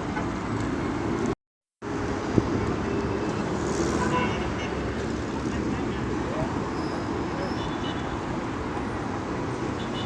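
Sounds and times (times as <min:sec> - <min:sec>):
road traffic hum: 0:00.0 - 0:10.0.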